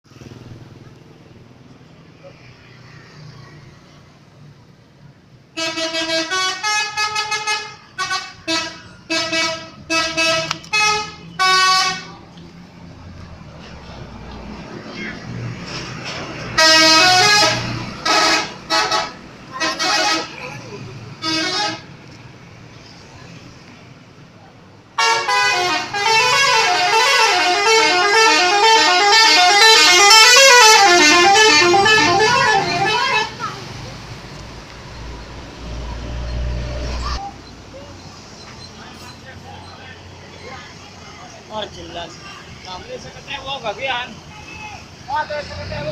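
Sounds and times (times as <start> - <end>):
low traffic rumble: 0.0 - 45.9
bus horn playing a tune: 5.6 - 12.2, 16.6 - 20.4, 21.2 - 21.9, 25.0 - 33.4.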